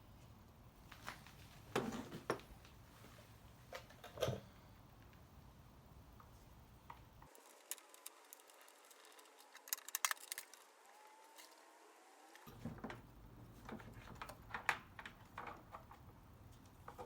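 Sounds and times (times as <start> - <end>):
small parts and tools clicking: 7.2 - 11.6.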